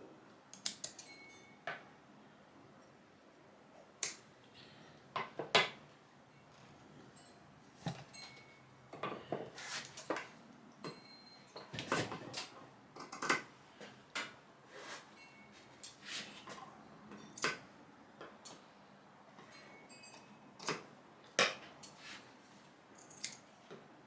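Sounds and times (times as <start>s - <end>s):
clicks with high ring: 0.9s - 1.6s.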